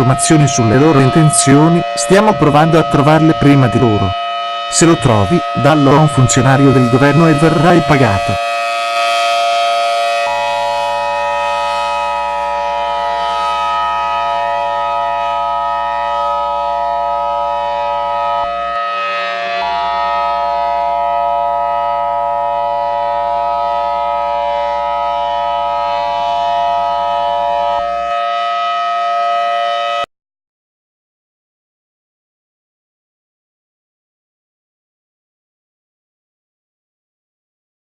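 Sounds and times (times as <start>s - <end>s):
electronic emergency alert tone: 0.0s - 14.3s.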